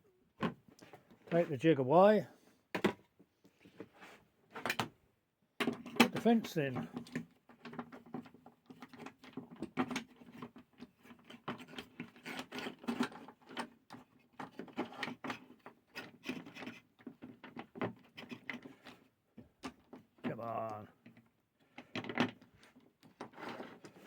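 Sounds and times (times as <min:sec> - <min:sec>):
metal and plastic parts rattling: 0:05.6 - 0:24.0.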